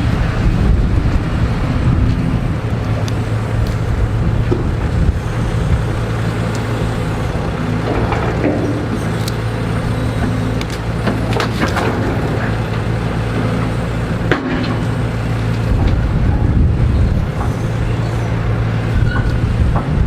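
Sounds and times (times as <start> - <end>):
diesel engine running: 0.0 - 20.0
squeaks or clanks: 18.9 - 19.4.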